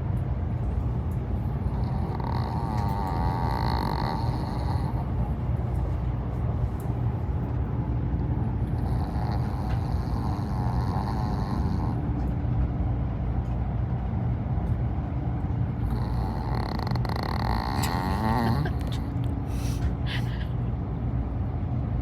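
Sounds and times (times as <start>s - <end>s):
train rumbling in motion: 0.0s - 22.0s
dog snoring: 1.6s - 5.4s, 8.6s - 12.1s, 15.8s - 19.3s.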